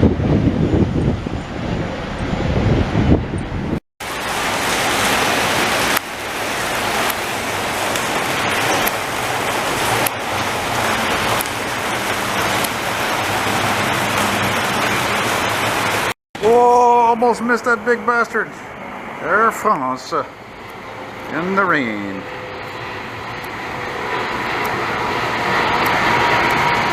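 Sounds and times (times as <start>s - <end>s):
wind buffeting microphone: 0.0s - 16.1s
rain hiss: 4.0s - 26.9s.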